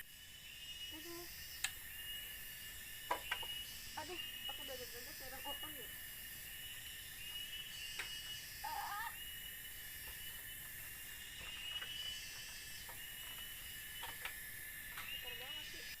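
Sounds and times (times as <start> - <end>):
insects trilling: 0.0 - 16.0
faint clicks: 1.6 - 1.8
wavering animal call: 8.6 - 9.2.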